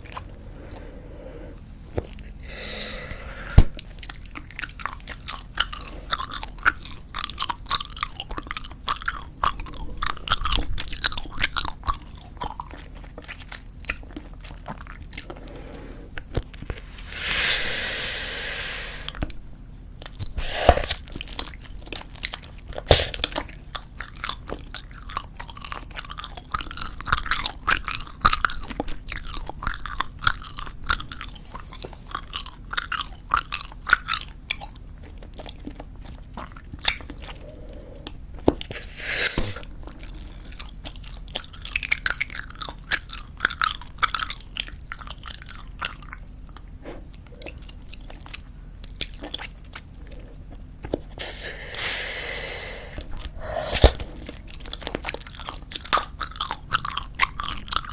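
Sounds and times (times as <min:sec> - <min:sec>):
wet chewing of bubblegum: 0:01.9 - 0:19.4, 0:20.0 - 0:57.9
breathy rush of air: 0:16.8 - 0:19.2, 0:51.2 - 0:54.0.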